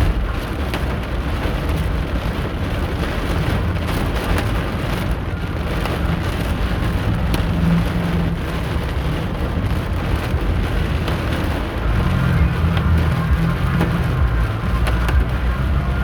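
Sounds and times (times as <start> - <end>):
car and road rumble: 0.0 - 16.0
heavy rain drumming on car: 0.0 - 16.0.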